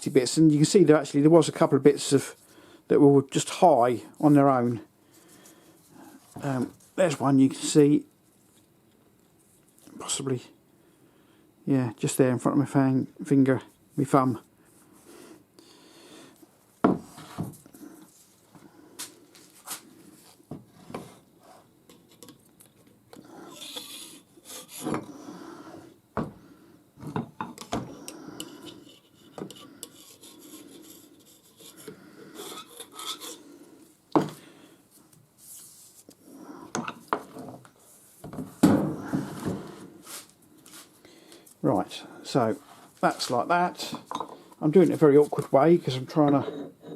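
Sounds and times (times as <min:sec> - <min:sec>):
metal sliding and rubbing: 0:23.4 - 0:25.4, 0:27.9 - 0:33.5.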